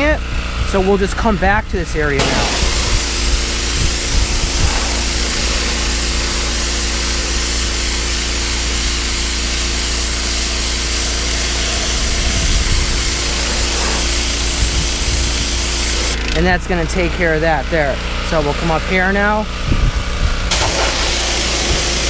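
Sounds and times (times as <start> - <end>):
pressure washer engine hum: 0.0 - 22.0
pressure washer jet hissing on wood: 2.2 - 16.4, 20.5 - 22.0.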